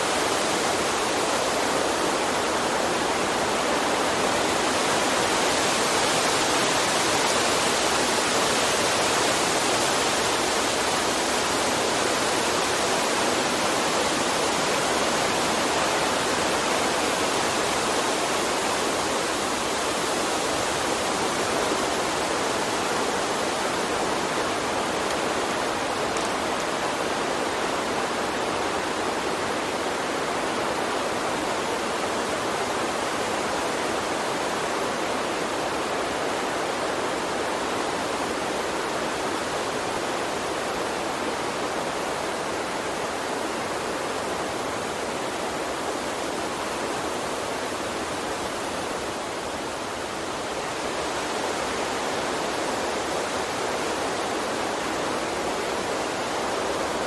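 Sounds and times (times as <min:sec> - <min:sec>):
water stream running: 0:00.0 - 0:57.0.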